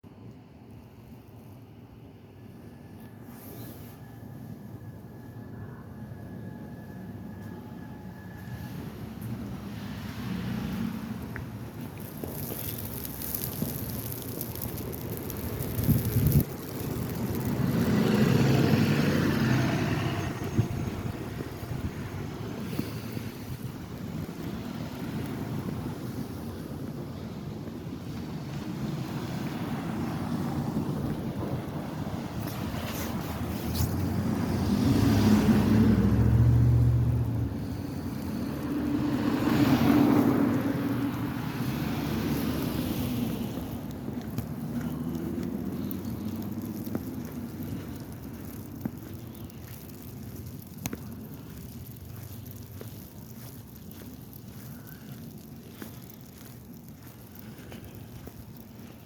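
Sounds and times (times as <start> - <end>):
outdoor noise: 0.0 - 59.0
vehicles passing by: 0.2 - 59.0
wind buffeting microphone: 11.1 - 36.3, 37.1 - 59.0.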